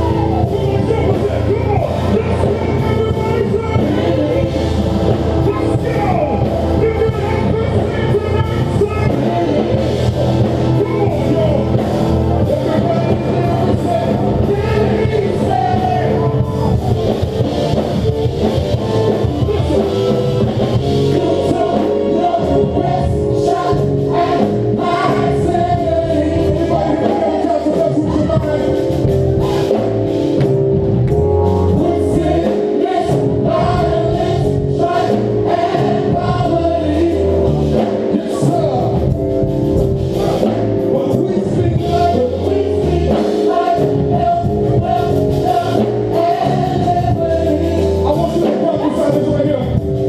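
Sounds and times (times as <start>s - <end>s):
band with drums: 0.0s - 50.0s
choir singing long notes: 19.2s - 28.0s, 31.7s - 38.3s, 41.6s - 48.2s.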